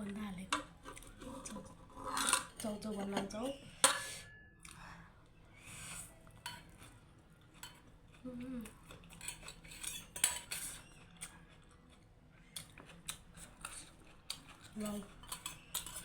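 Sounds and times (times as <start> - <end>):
utensils clinking against a dish: 0.5 - 4.4, 6.4 - 6.9, 7.5 - 7.9, 9.0 - 11.1, 13.4 - 16.0.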